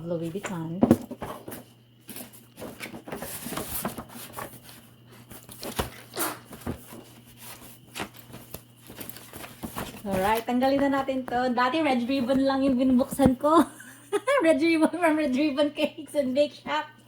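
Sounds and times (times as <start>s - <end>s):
paper packaging rustling: 0.2s - 13.3s.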